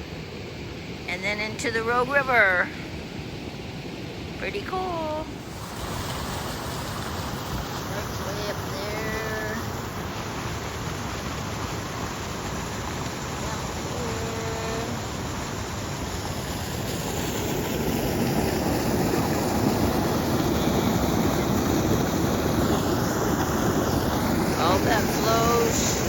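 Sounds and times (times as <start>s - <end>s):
waterfall and stream rushing: 5.2s - 26.0s.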